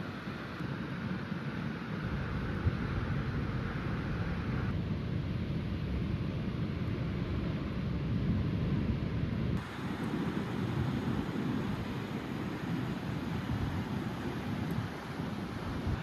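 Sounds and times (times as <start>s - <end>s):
rain: 0.0s - 4.7s, 9.6s - 16.0s
wind: 0.0s - 16.0s.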